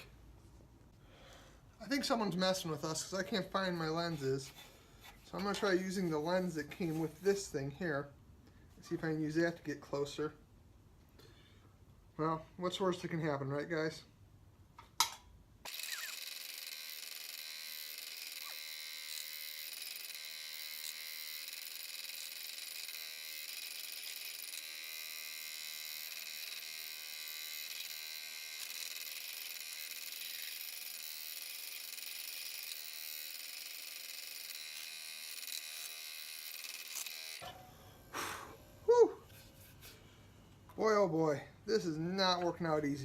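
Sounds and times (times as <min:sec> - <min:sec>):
scroll saw cutting wood: 0:02.0 - 0:07.5, 0:15.7 - 0:37.5.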